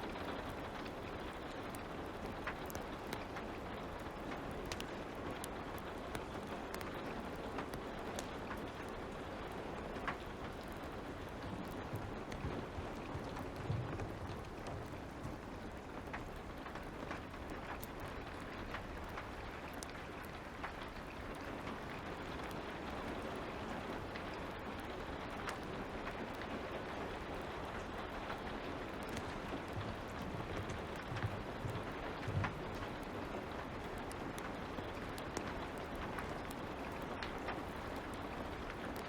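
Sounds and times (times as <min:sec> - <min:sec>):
light rain: 0:00.0 - 0:39.0
wood fire crackling: 0:00.0 - 0:39.0
soft low thumps: 0:11.4 - 0:15.4, 0:29.2 - 0:32.9.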